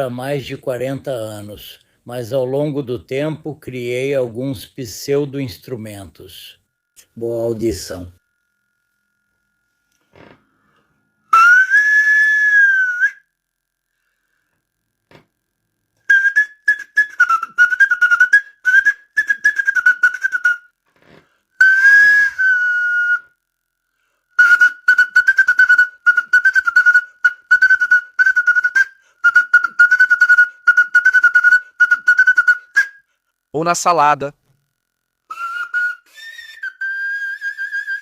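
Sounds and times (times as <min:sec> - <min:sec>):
whistle-flute tune: 0:11.3 - 0:13.3, 0:16.0 - 0:20.8, 0:21.6 - 0:23.4, 0:24.4 - 0:33.1, 0:35.3 - 0:38.0.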